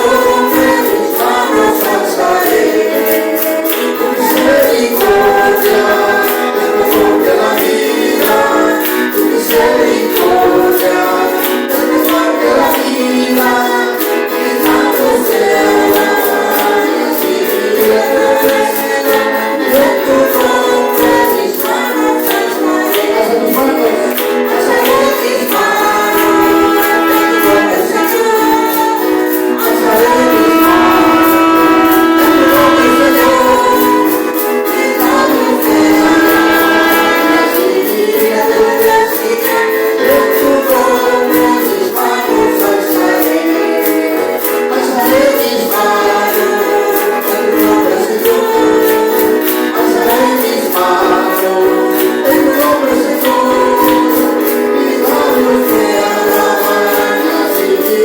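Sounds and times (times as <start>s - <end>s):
instrumental backing: 0.0s - 58.0s
voices singing together: 0.0s - 58.0s
steady percussion beat: 14.0s - 58.0s.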